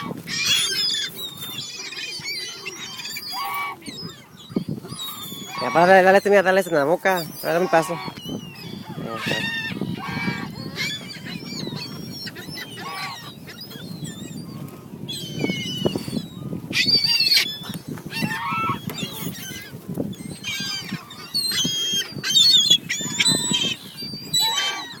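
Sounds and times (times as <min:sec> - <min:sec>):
geese honking: 0:02.8 - 0:03.9, 0:05.1 - 0:08.2, 0:08.8 - 0:11.0, 0:11.9 - 0:13.4, 0:18.1 - 0:19.4, 0:24.4 - 0:25.0.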